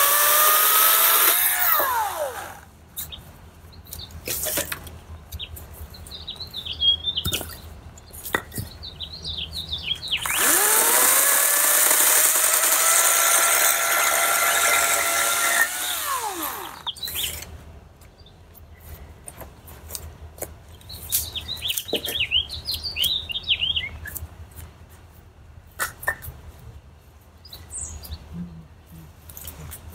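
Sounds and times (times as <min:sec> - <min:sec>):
cordless chainsaw cutting a log: 0:00.0 - 0:02.7, 0:10.2 - 0:16.9
small birds chirping: 0:02.0 - 0:04.3, 0:05.1 - 0:10.7, 0:15.8 - 0:17.4, 0:20.7 - 0:24.2, 0:27.4 - 0:28.7.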